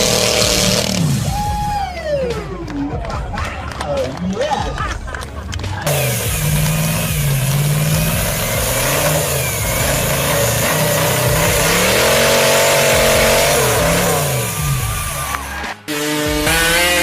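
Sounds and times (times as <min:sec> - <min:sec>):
engine revving: 0:00.0 - 0:01.5, 0:05.8 - 0:17.0.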